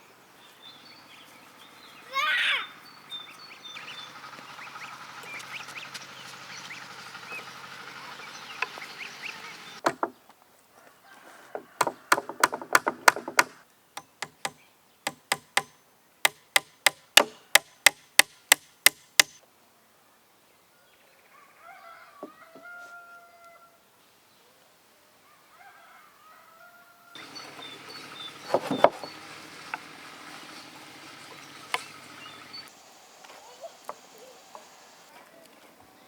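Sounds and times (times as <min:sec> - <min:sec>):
geese calling: 0:01.1 - 0:09.8, 0:27.2 - 0:32.7
sharp chopping strokes: 0:11.8 - 0:19.4, 0:27.2 - 0:32.7.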